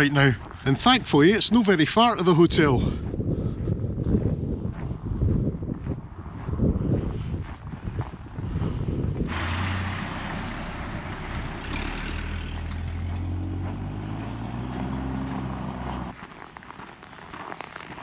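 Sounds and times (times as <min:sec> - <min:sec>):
wind buffeting microphone: 0:00.0 - 0:16.2
rushing vehicle noise: 0:04.0 - 0:16.5.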